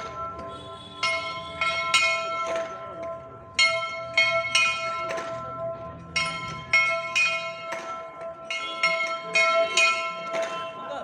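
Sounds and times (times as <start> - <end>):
metal bell ringing: 0.0 - 11.0.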